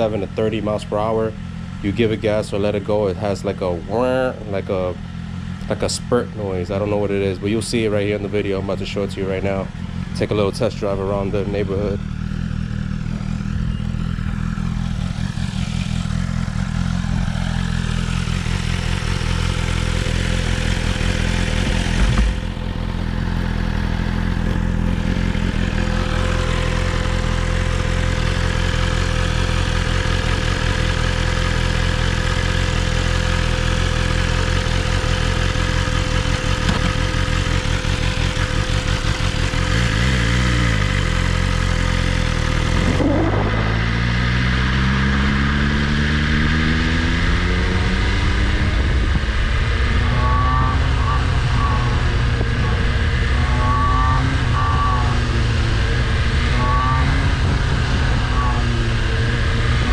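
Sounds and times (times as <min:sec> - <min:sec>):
motorcycle engine running: 0:00.0 - 0:59.9
loud thump: 0:21.6 - 0:22.8, 0:36.6 - 0:37.2, 0:42.6 - 0:44.6.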